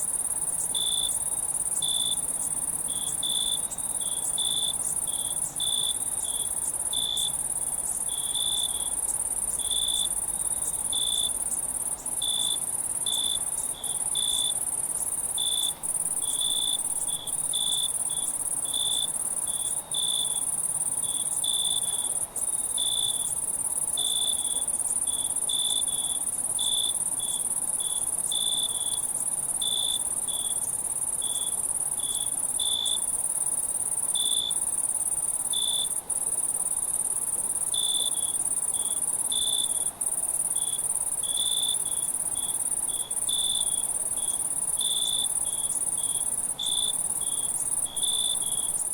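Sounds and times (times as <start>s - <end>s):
cricket chirps: 0.0s - 48.9s
high-pitched insect trill: 0.0s - 48.9s.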